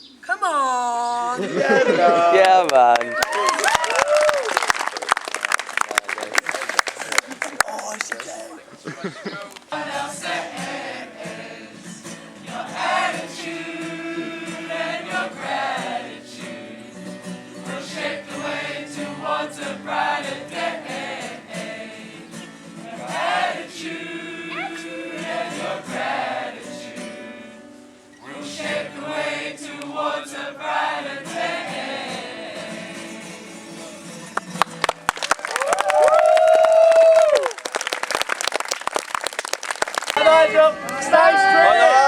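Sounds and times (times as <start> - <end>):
group of voices singing: 9.0 - 34.4.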